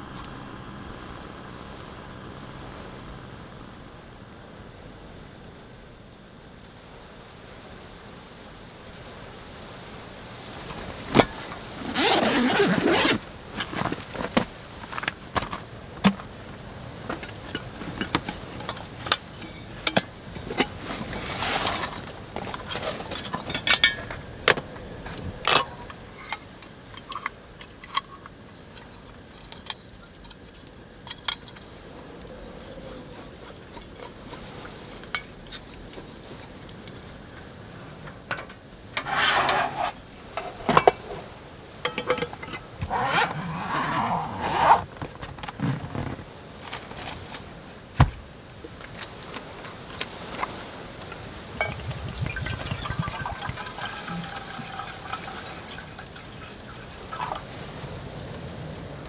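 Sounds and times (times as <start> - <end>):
rustling: 11.1 - 15.7, 17.0 - 37.4.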